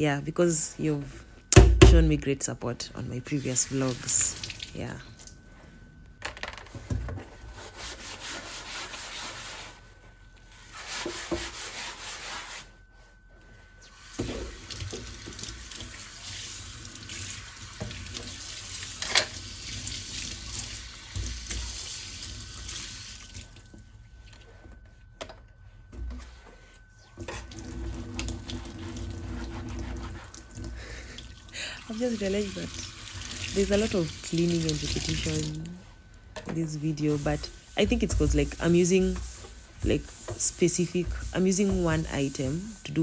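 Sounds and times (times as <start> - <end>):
dishes being rinsed: 14.2 - 23.4, 37.0 - 43.0.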